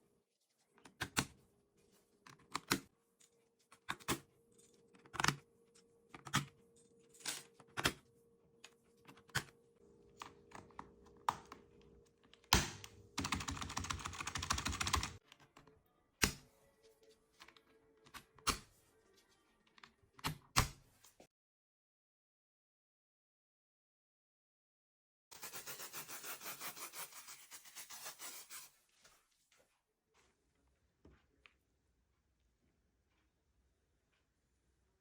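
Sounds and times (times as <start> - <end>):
keyboard keys clacking: 13.2 - 15.2.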